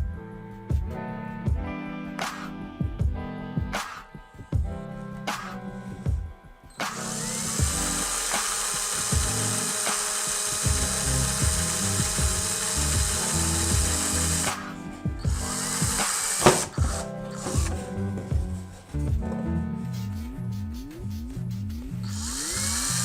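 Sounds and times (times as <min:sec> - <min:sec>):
background music: 0:00.0 - 0:23.0
handheld power tool running: 0:06.8 - 0:18.0, 0:22.1 - 0:23.0.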